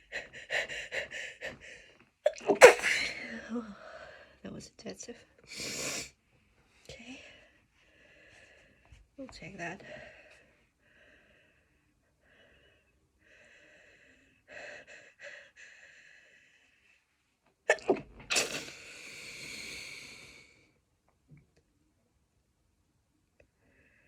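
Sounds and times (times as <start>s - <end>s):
person sneezing: 2.4s - 3.3s, 17.7s - 18.8s.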